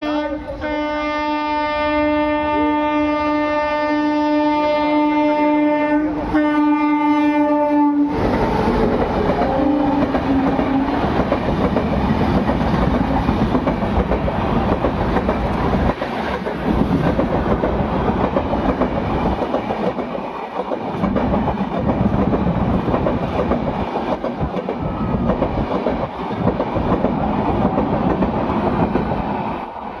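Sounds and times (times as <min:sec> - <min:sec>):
locomotive horn blast: 0:00.0 - 0:08.2, 0:09.5 - 0:11.0
train rumbling over rail joints: 0:00.1 - 0:30.0.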